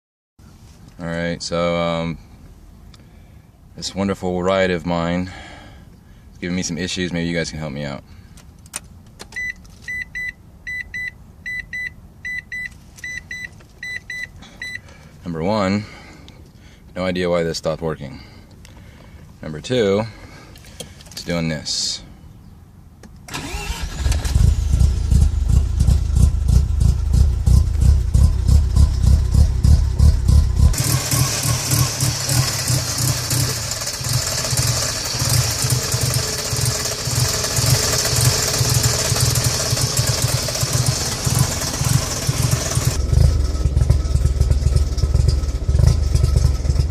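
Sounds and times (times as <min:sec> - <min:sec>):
car engine idling roughly: 0:24.5 - 0:46.9.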